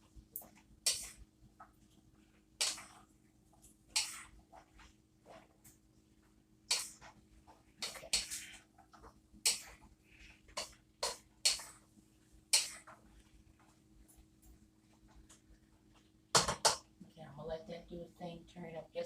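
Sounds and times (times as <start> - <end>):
utensil scraping and knocking on pan: 10.4 - 11.8.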